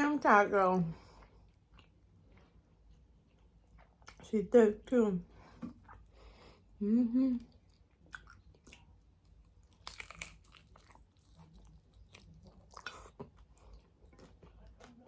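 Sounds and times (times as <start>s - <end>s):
chewing crunchy food: 1.0s - 4.3s, 7.4s - 15.0s.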